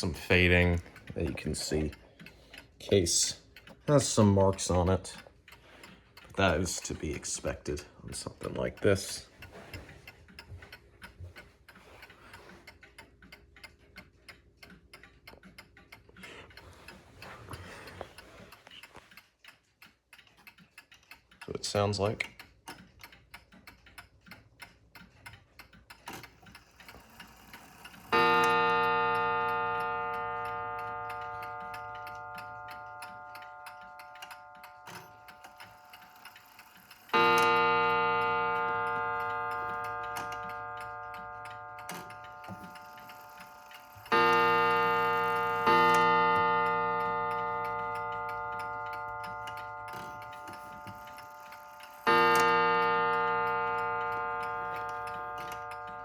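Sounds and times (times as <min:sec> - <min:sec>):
mantel clock ticking: 0:00.0 - 0:56.0
clock gong striking: 0:28.2 - 0:34.0, 0:37.2 - 0:42.7, 0:44.1 - 0:51.3, 0:52.0 - 0:56.0.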